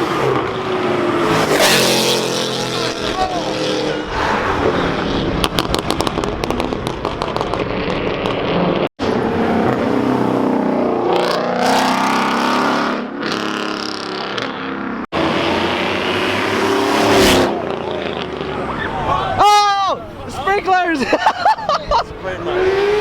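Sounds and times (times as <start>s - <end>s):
car engines revving: 0.0s - 23.0s
crackling exhaust pops: 5.4s - 8.4s.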